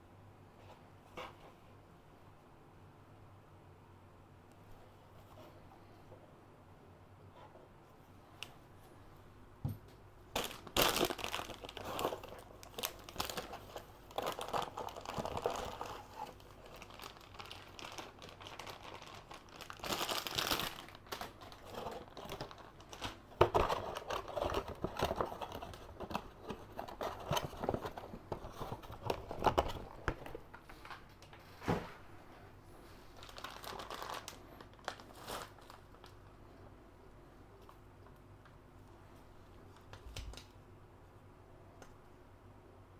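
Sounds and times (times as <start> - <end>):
packaging crinkling and rustling: 10.3 - 32.0, 32.8 - 36.4.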